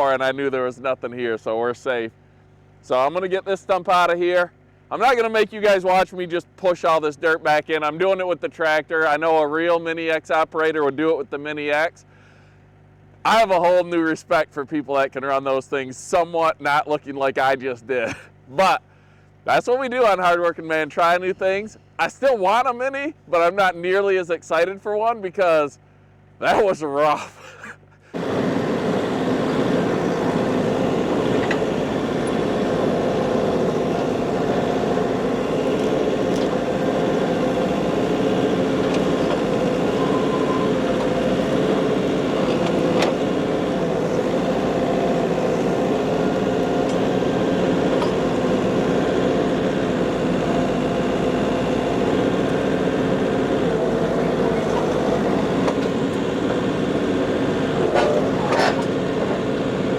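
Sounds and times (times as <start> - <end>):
tractor engine running: 28.1 - 59.9.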